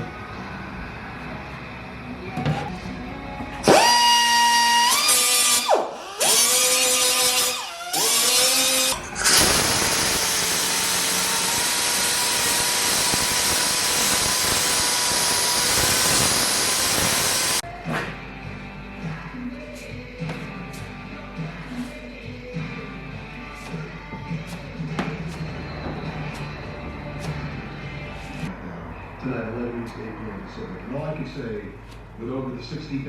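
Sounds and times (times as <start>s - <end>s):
power tool whining: 3.5s - 17.6s.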